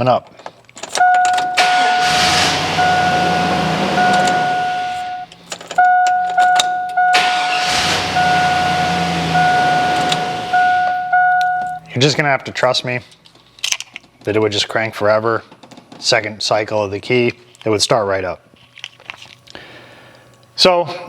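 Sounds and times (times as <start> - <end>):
car starter cranking: 0.9 - 12.0
warning chime dinging: 1.0 - 12.0.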